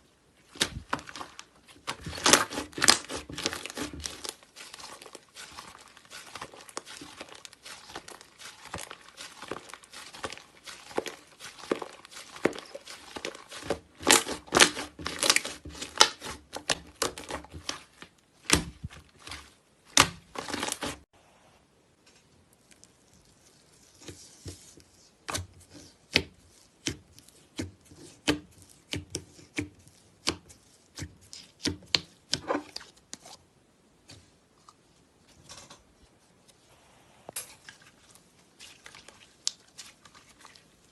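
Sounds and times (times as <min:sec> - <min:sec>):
slime crackling: 0:00.4 - 0:21.0.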